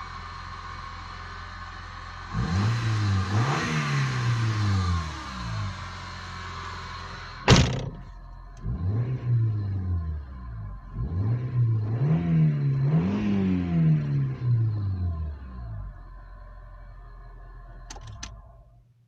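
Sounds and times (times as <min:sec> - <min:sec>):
car engine revving: 0:00.0 - 0:18.7
sharp knock: 0:07.5 - 0:08.1.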